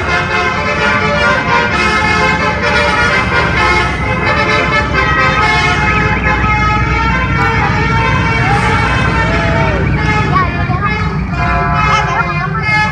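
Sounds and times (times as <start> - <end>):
multi-tone bus horn: 0.0 - 12.9
steady low rumble: 1.4 - 12.9.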